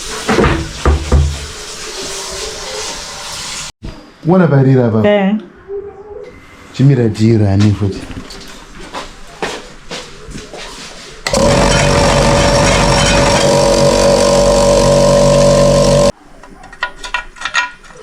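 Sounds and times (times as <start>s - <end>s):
air compressor motor humming: 11.3s - 16.1s.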